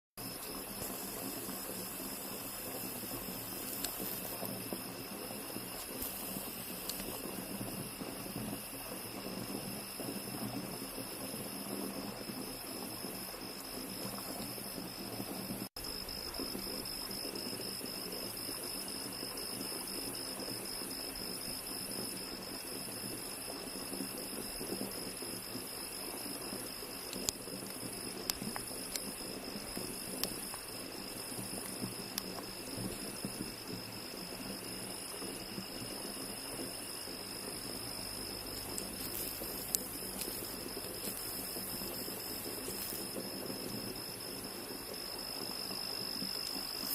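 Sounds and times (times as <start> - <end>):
insects trilling: 0.2 - 46.9
steady background hiss: 0.2 - 46.9
faint ticks: 2.8 - 4.7, 5.7 - 7.3, 27.1 - 30.7, 31.3 - 33.8, 38.5 - 44.0.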